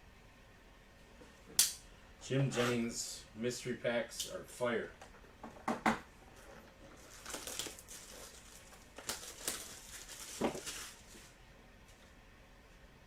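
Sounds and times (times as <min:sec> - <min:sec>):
loud wrapper rustle: 0:06.4 - 0:11.4
card pack wrappers tearing: 0:07.0 - 0:11.3.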